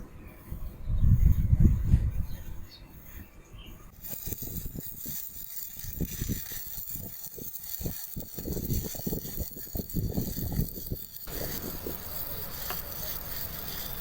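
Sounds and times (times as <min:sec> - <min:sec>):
welding arc hissing: 0:03.9 - 0:14.0.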